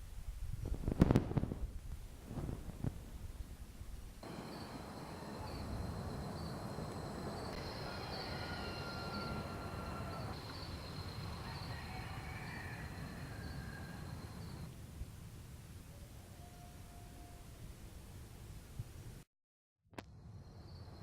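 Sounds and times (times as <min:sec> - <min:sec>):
insects trilling: 0:04.2 - 0:14.7
short insect chirps: 0:04.2 - 0:14.7.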